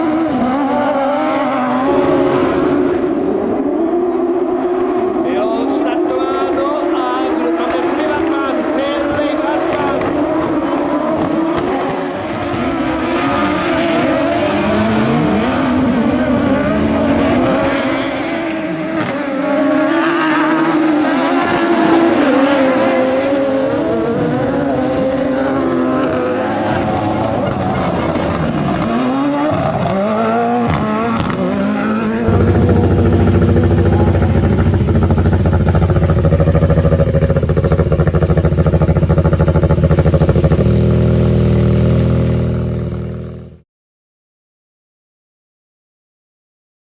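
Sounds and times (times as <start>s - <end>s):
race car engine revving: 0.0s - 5.2s, 8.9s - 43.6s
steady low engine note: 32.3s - 43.6s.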